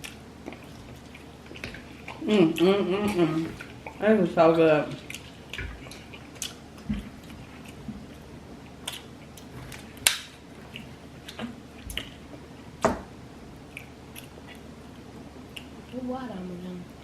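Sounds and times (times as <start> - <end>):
chewing and biting fried food: 0.0 - 4.0, 4.9 - 12.5.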